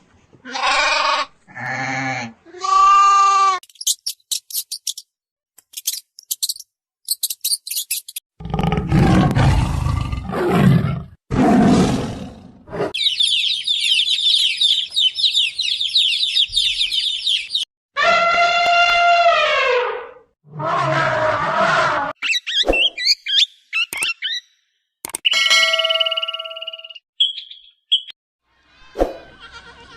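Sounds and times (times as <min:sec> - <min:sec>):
loud rough animal roars: 0:08.4 - 0:12.8, 0:20.4 - 0:22.1.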